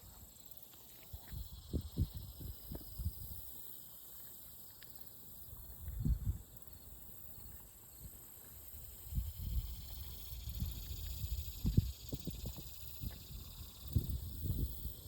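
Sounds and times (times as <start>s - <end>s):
high-pitched insect drone: 8.8s - 15.0s.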